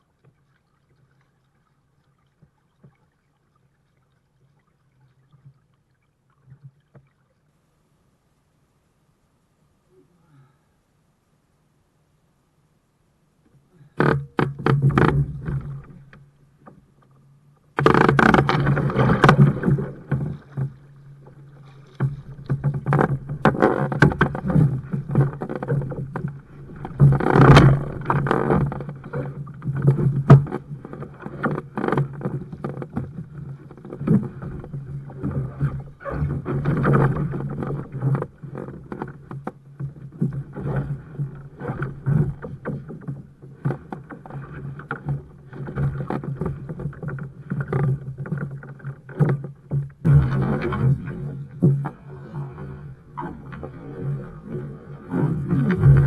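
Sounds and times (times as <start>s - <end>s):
water splashing around kayak: 0.0s - 7.8s, 13.8s - 56.0s
knocks against kayak hull: 14.1s - 15.9s.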